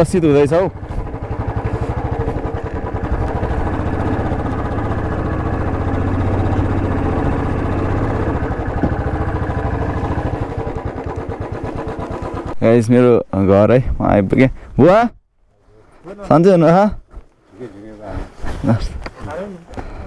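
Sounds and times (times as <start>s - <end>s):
motorcycle engine chugging: 0.0s - 13.1s.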